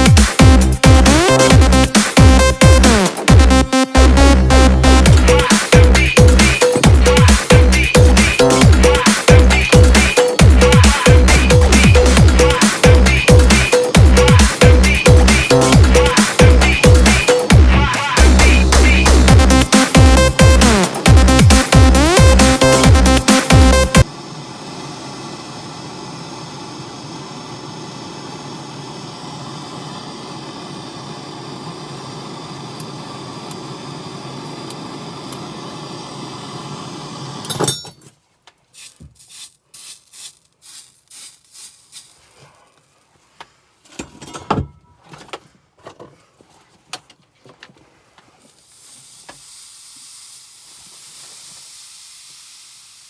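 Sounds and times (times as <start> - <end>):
steady hiss: 22.6 - 37.6, 38.8 - 43.1, 48.4 - 53.0.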